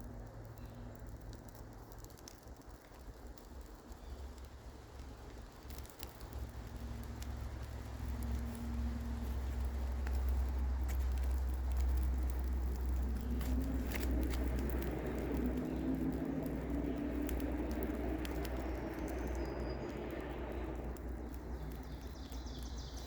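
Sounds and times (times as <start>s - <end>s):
rain pattering: 0.0s - 23.0s
low rumble: 6.2s - 23.0s.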